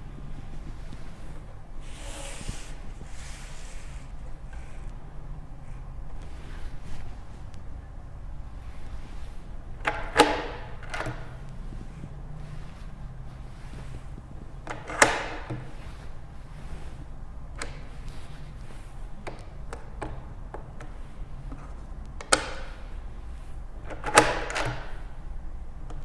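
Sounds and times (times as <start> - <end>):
door lock clicks and knocks: 9.8 - 11.4, 23.9 - 25.0.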